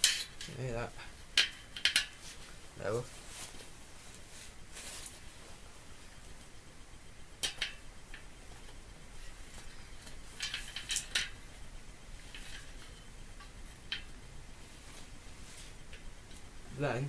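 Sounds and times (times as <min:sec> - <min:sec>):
small hard parts clinking: 0:00.0 - 0:00.6, 0:09.2 - 0:11.4.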